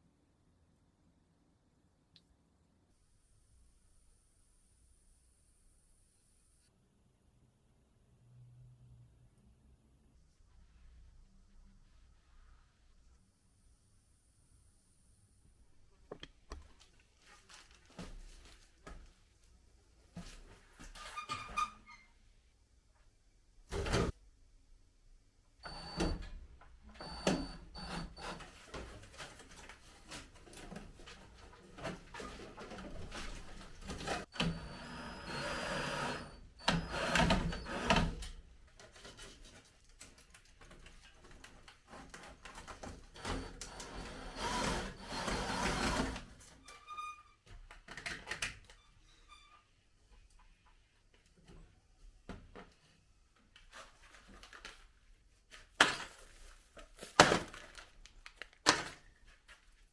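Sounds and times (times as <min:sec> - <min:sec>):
knocks clatters and scraping: 0:28.0 - 0:34.3.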